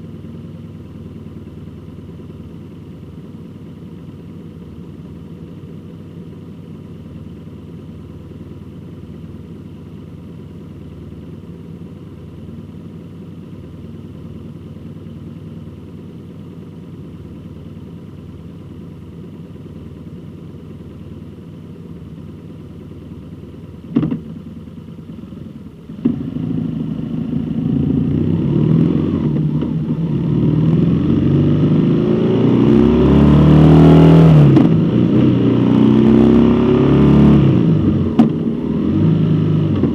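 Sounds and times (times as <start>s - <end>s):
vehicle engine idling and revving: 0.0s - 39.9s
sharp knocks: 23.9s - 24.3s.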